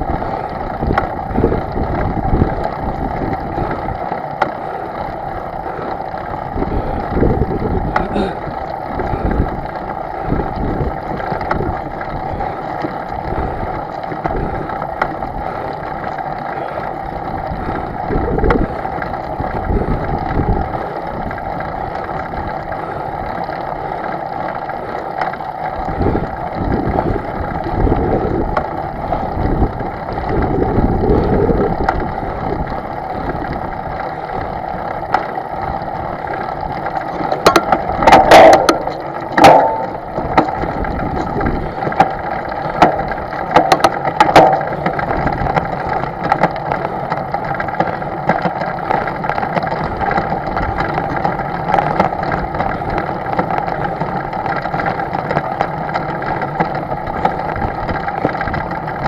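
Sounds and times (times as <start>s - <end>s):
engine running: 0.0s - 59.0s
loud clatter: 37.0s - 54.0s.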